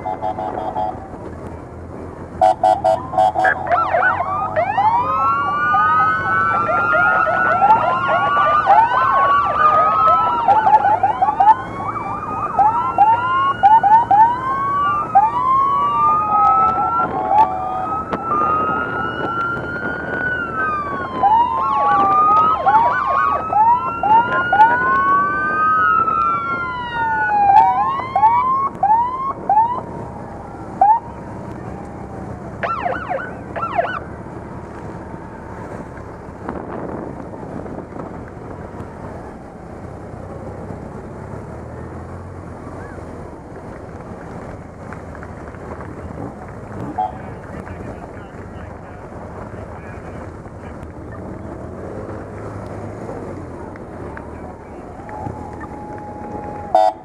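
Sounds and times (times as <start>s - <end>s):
police motorcycle sirens wailing: 0.0s - 57.0s.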